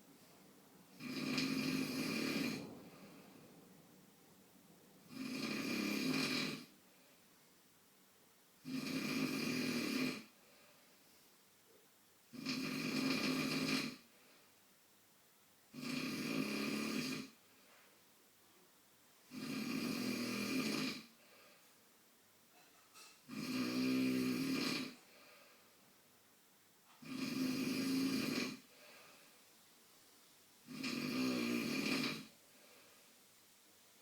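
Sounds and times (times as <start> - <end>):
man snoring: 1.0 - 3.1, 5.1 - 6.7, 8.6 - 10.4, 12.3 - 14.1, 15.7 - 17.4, 19.3 - 21.2, 23.3 - 25.1, 27.0 - 28.9, 30.7 - 32.4.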